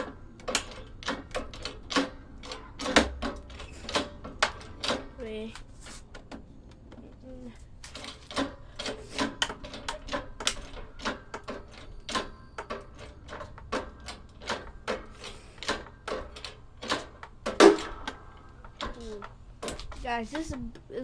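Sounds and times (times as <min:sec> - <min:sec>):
blows on plastic housing: 0:07.6 - 0:20.1.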